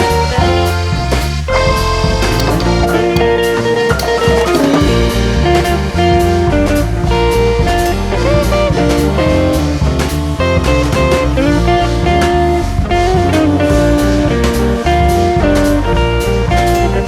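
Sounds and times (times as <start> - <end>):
bass line: 0.0 - 8.1
plucked guitar: 0.0 - 9.6
drum beat: 1.8 - 5.2.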